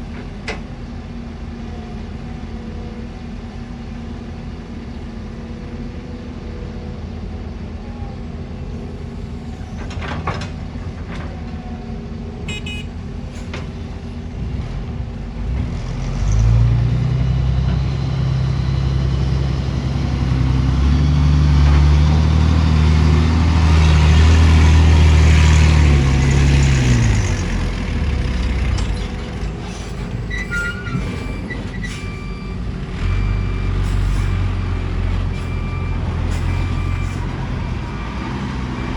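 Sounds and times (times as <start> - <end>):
short high beeps: 12.5 - 12.9
heavy diesel engine revving: 15.5 - 38.9.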